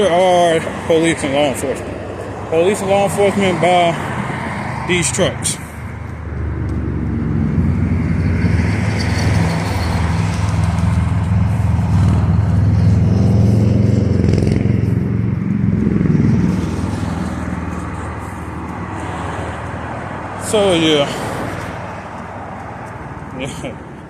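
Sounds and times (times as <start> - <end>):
vehicle engine passing by: 0.0 - 22.6.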